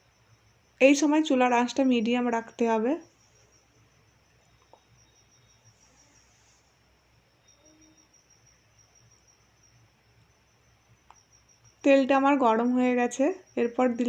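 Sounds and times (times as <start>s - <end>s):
cricket trilling: 0.0s - 14.0s.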